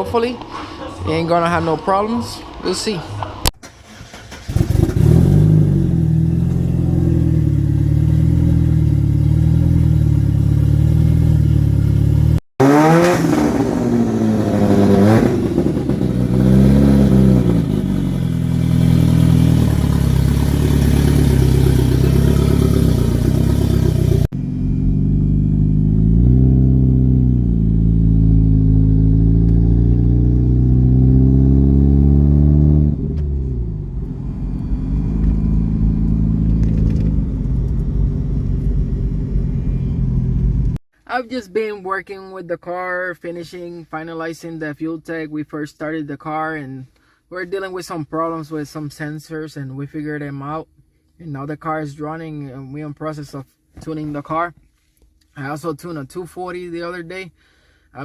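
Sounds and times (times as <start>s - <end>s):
car engine idling and revving: 0.0s - 40.8s.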